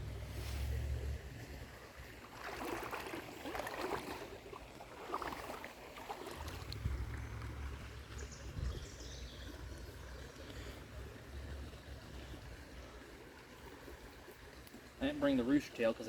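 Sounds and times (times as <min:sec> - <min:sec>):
low microphone rumble: 0:00.0 - 0:01.9, 0:06.6 - 0:12.6
creek water splashing: 0:00.0 - 0:16.0.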